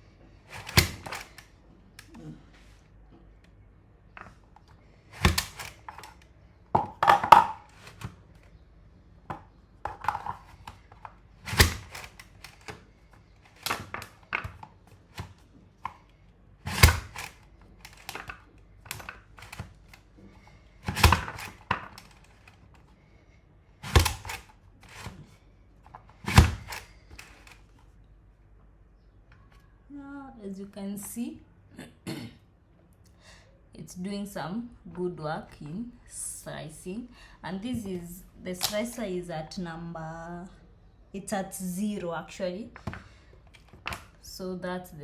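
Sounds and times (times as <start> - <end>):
plastic clicks and rattles: 0.5 - 2.2, 4.1 - 8.6, 9.3 - 22.9, 23.9 - 27.8.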